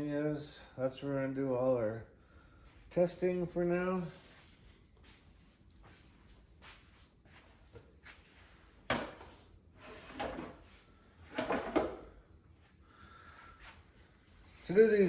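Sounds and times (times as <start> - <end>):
objects being moved and set down: 8.8 - 12.2.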